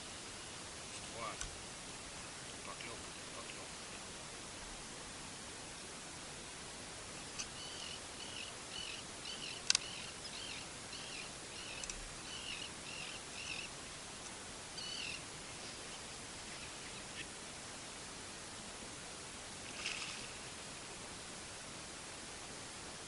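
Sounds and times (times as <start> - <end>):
steady outdoor hiss: 0.0 - 23.0
bird chirping: 7.4 - 13.7, 14.8 - 17.3
sharp click: 9.6 - 9.8.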